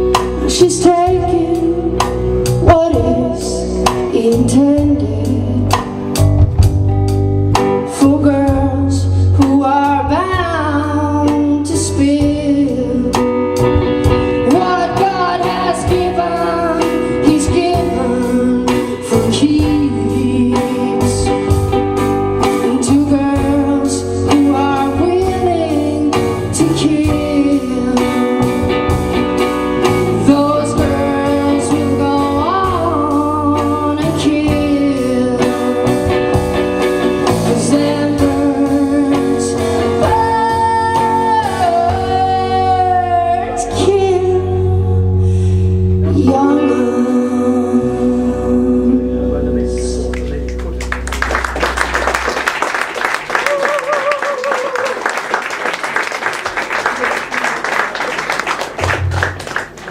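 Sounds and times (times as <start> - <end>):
woman singing: 0.0 - 6.0, 7.8 - 21.8, 22.4 - 28.8, 29.9 - 36.2, 37.2 - 45.1, 46.0 - 49.4
drum kit: 0.0 - 43.1
bass guitar: 0.0 - 59.9
guitar: 0.0 - 59.9.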